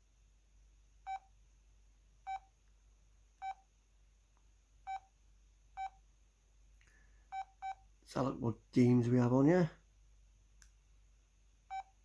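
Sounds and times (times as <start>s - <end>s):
mobile phone keypad beeps: 5.8s - 6.0s.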